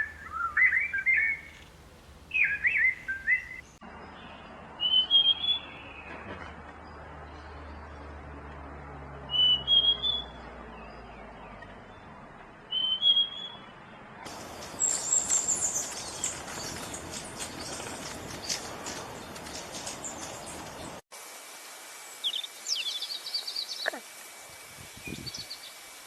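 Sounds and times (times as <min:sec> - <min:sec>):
whistled bird phrases: 0:00.0 - 0:01.6, 0:02.3 - 0:03.6, 0:04.8 - 0:06.1, 0:09.3 - 0:10.3, 0:12.7 - 0:13.7
high thin bird chirping: 0:14.3 - 0:21.0, 0:22.1 - 0:24.0.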